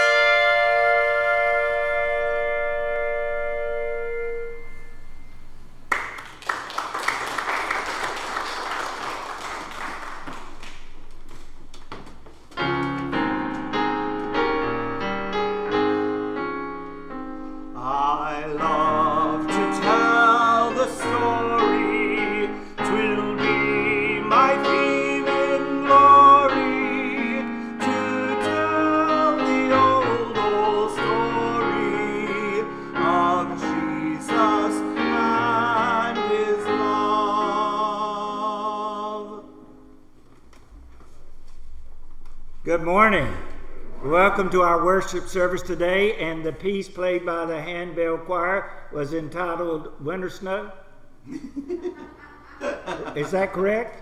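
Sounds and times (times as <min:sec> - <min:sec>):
keyboard accompaniment: 0:00.0 - 0:05.8, 0:11.8 - 0:42.5.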